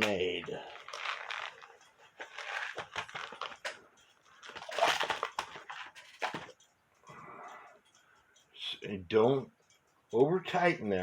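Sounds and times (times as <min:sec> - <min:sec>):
small metal clicks and scrapes: 0:00.0 - 0:06.7.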